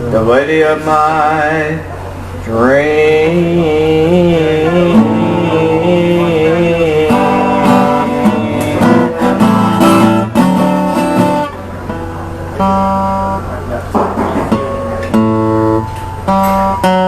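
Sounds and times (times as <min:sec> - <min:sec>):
person singing with vibrato: 0:00.0 - 0:11.5
acoustic guitar strumming: 0:00.0 - 0:17.0.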